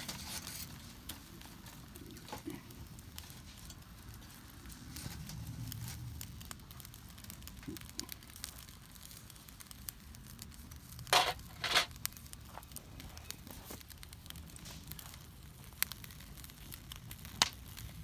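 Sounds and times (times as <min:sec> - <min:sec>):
campfire crackling: 0:00.0 - 0:18.0
sharp pops of fire: 0:00.0 - 0:18.0.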